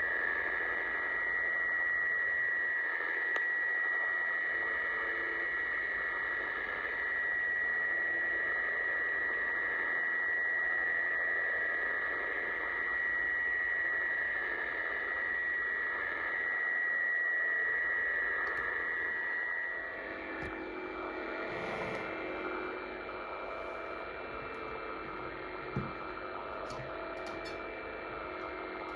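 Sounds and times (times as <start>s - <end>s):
steady high radio tone: 0.0s - 28.9s
lower radio tones: 15.8s - 28.9s
clicks: 23.8s - 27.8s.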